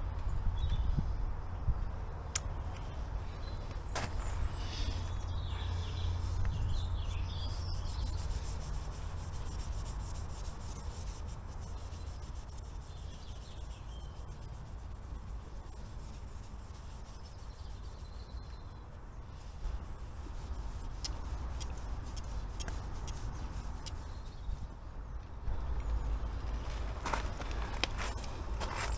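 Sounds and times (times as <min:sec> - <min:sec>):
hand rubbing metal casing: 0:05.6 - 0:18.2, 0:19.4 - 0:24.5.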